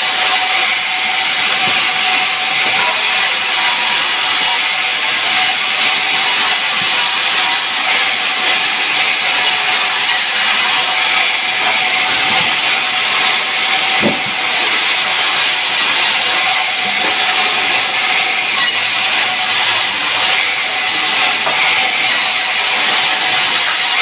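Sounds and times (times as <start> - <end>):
saw cutting through log: 0.0 - 24.0
knock: 14.0 - 14.4.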